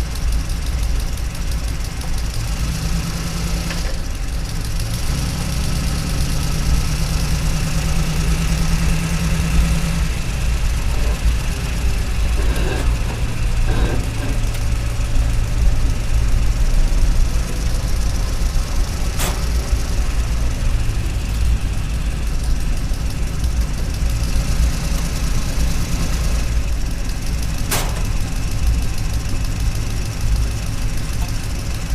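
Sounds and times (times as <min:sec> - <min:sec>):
toy excavator motor humming: 0:09.5 - 0:21.6.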